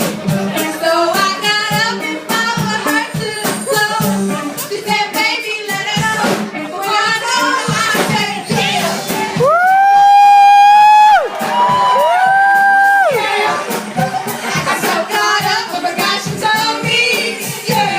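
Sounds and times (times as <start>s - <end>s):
singing over percussive beat: 11.4s - 17.9s.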